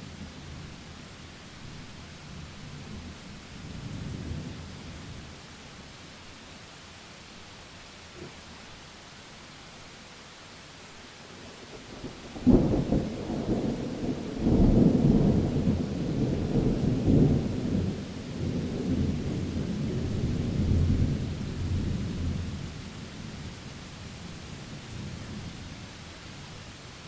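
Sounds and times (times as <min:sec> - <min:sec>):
rain hiss: 0:00.0 - 0:27.0
rolling thunder rumble: 0:11.9 - 0:22.8.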